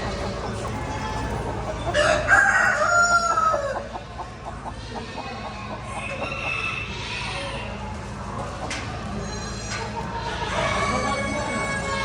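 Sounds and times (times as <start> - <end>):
chickens clucking: 0.0 - 12.0
rooster crowing: 1.9 - 3.8.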